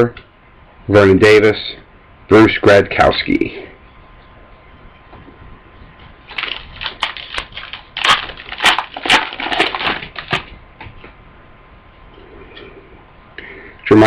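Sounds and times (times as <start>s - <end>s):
wrapper crinkling: 6.3s - 10.5s.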